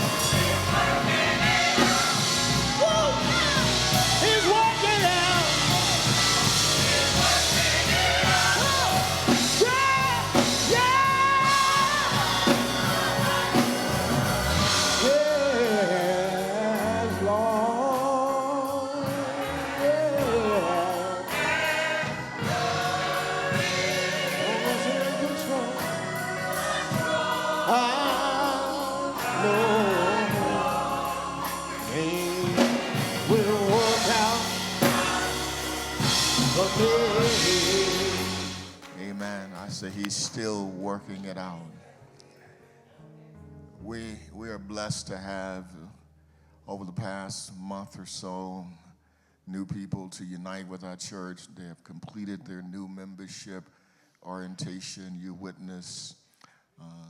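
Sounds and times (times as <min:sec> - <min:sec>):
instrumental accompaniment: 0:00.0 - 0:40.6
gospel choir singing: 0:00.0 - 0:42.1.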